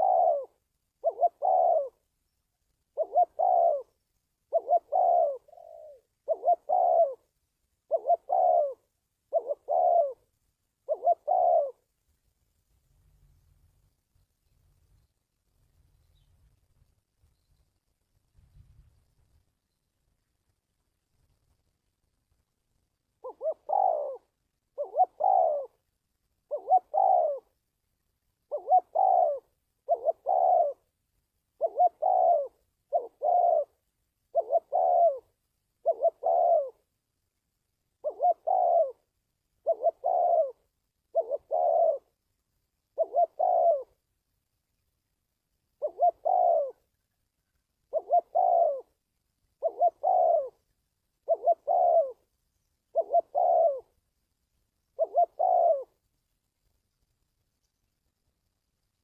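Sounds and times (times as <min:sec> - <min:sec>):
dove cooing: 0:00.0 - 0:11.9, 0:23.0 - 0:27.7, 0:28.4 - 0:37.0, 0:38.0 - 0:42.2, 0:42.8 - 0:44.0, 0:45.7 - 0:54.0, 0:54.9 - 0:56.1.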